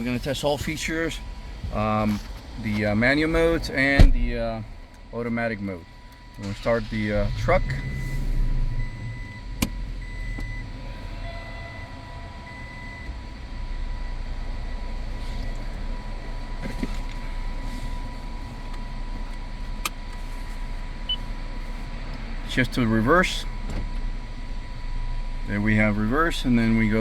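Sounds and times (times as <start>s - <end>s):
engine starting and idling: 5.8s - 27.0s.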